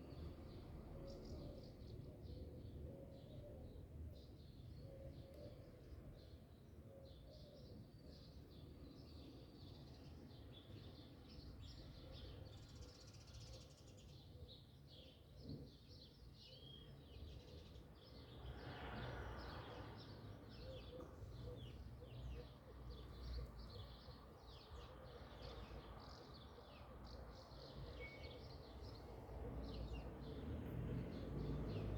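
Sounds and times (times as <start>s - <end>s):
faint bird chirping: 7.0s - 30.4s.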